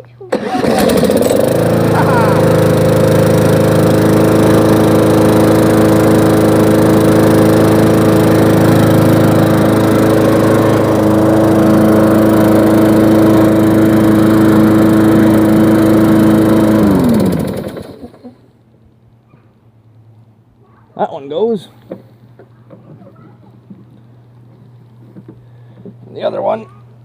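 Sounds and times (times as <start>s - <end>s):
engine winding down: 0.3s - 18.4s
lawn mower engine running: 0.3s - 18.4s.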